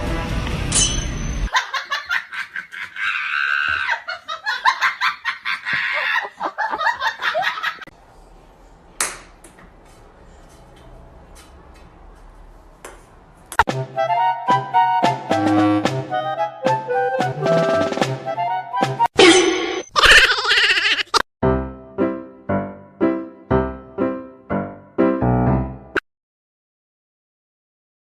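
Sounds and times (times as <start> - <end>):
person laughing hard: 1.5 - 7.9, 19.9 - 21.2.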